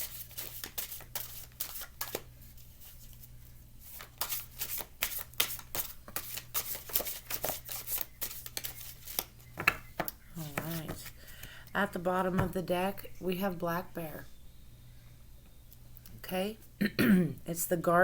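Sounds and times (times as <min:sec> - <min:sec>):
cards being shuffled: 0:00.0 - 0:03.3, 0:03.9 - 0:11.2.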